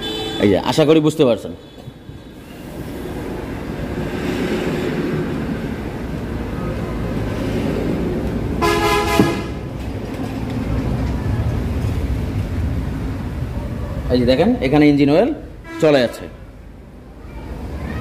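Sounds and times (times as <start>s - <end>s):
vehicle horn: 0.0s - 0.6s, 8.6s - 9.6s, 15.6s - 16.6s
low rumble of road traffic: 0.0s - 18.0s.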